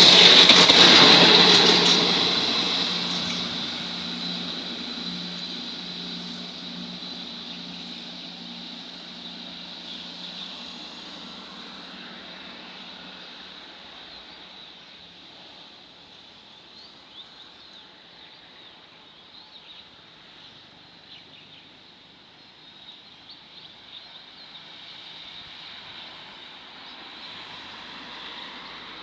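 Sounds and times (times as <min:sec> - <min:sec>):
train rumble: 0:00.0 - 0:14.5.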